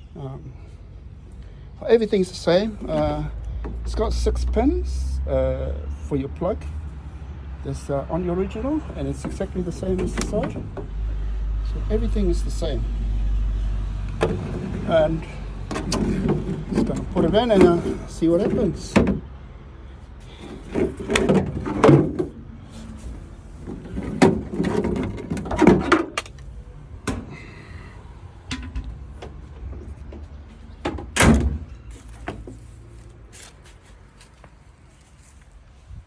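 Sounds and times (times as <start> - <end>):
window regulator knocks and rattles: 14.2 - 15.0, 15.6 - 19.3, 20.5 - 22.4, 23.7 - 26.3.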